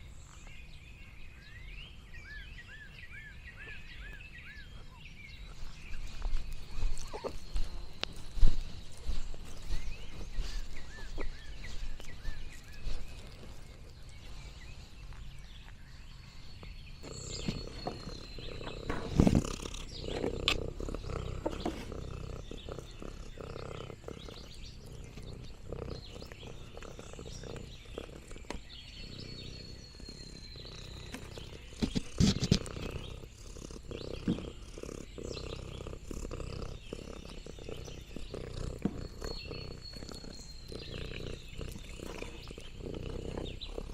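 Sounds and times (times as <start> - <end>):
cat purring: 4.5 - 43.9
clicks and rustles: 17.2 - 21.9, 31.1 - 33.1.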